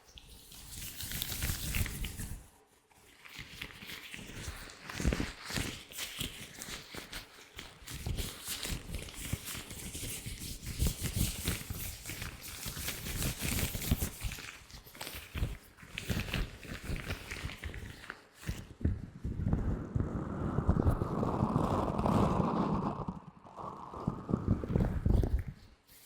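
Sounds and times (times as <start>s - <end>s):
latex gloves crinkling: 0.0s - 19.9s.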